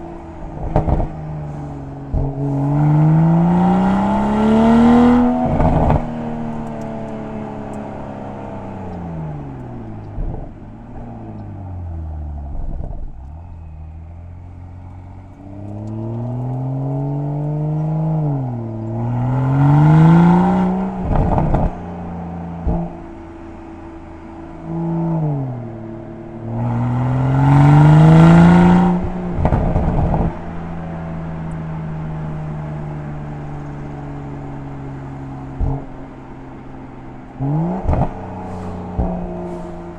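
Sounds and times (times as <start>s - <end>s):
exhaust crackles and pops: 0.0s - 2.8s, 5.1s - 8.0s, 8.8s - 13.6s, 14.8s - 17.3s, 20.6s - 24.9s, 28.9s - 39.9s
car engine revving: 0.0s - 39.9s.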